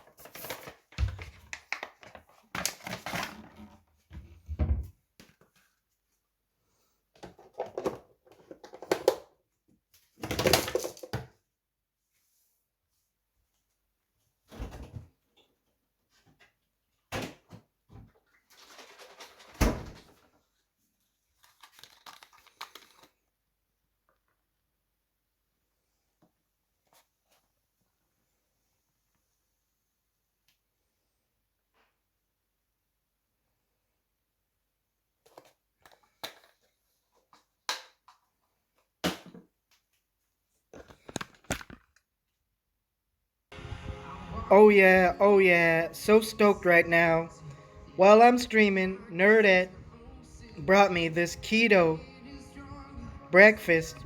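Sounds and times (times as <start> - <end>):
objects knocking and clattering: 7.2 - 9.3, 10.2 - 11.4.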